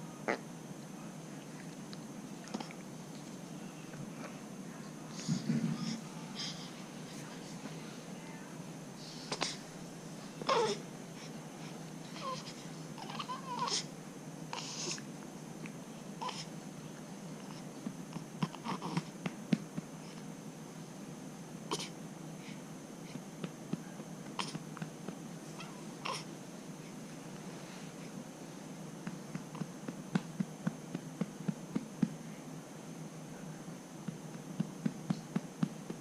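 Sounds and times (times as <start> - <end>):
room noise: 0.0 - 36.0
baby vocalizing: 10.5 - 10.8, 24.4 - 24.6, 25.6 - 26.3.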